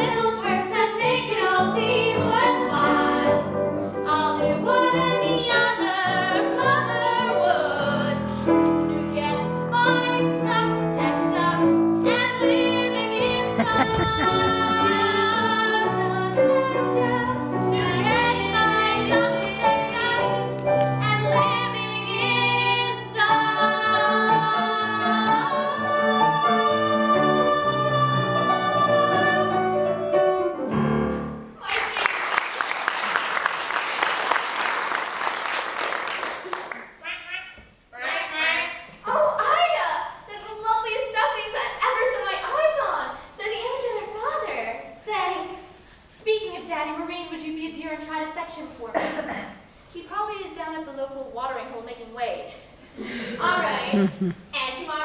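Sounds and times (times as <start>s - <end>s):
women and chorus singing: 13.2s - 16.4s, 22.2s - 29.8s.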